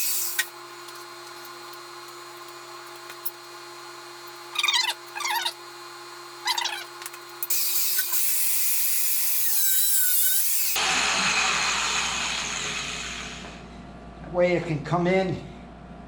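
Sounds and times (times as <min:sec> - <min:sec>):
power tool hissing on steel: 0:00.0 - 0:00.5, 0:07.5 - 0:13.6
power tool scraping steel: 0:07.5 - 0:11.4.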